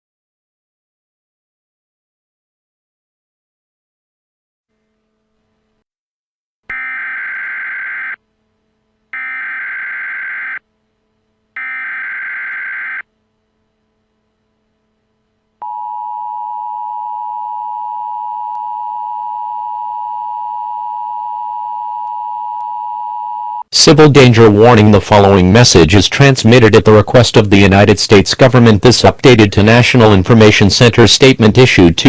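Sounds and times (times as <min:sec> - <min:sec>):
data tone bursts: 0:06.7 - 0:08.2, 0:09.2 - 0:10.6, 0:11.6 - 0:13.0
steady attention tone: 0:06.7 - 0:08.3, 0:09.1 - 0:10.6, 0:11.6 - 0:13.1.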